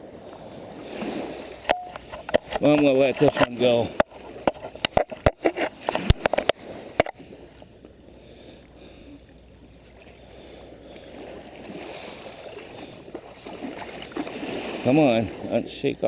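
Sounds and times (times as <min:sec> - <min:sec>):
shallow water washing at shoreline: 0:00.0 - 0:16.0
sharp clicks and knocks: 0:01.6 - 0:07.2.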